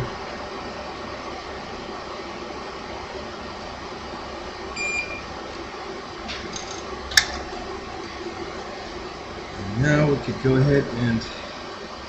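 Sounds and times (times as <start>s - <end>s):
fan-like equipment hum: 0.0s - 12.0s
high electronic beep: 4.8s - 5.3s.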